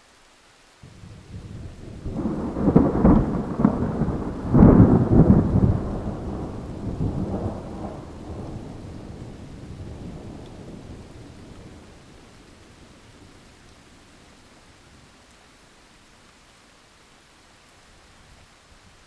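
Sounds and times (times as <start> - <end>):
steady rain: 0.0 - 19.0
rolling thunder: 0.8 - 12.2.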